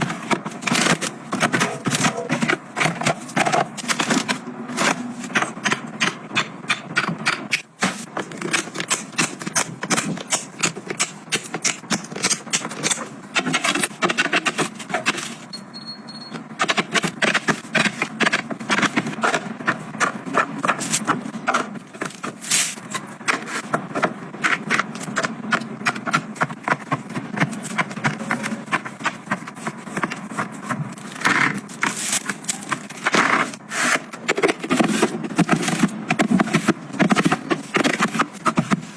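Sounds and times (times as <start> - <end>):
household items clicking and tapping: 16.6 - 38.9.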